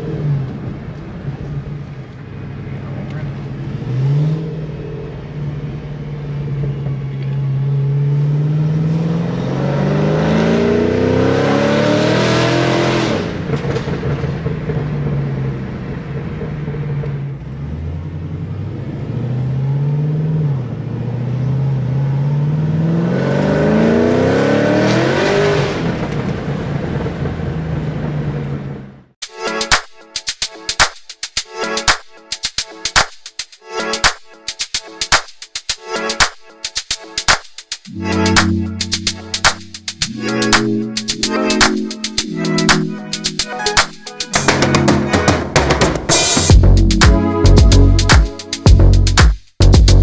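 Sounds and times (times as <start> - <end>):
engine revving hard: 8.0 - 13.5, 21.2 - 26.1.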